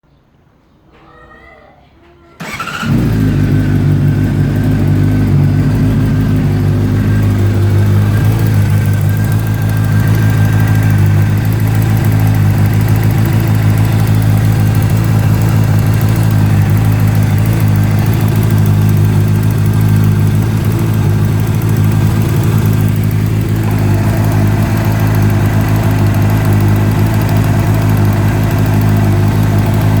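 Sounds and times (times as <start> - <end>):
motorcycle engine idling: 2.4 - 30.0
metallic clicking: 7.0 - 30.0.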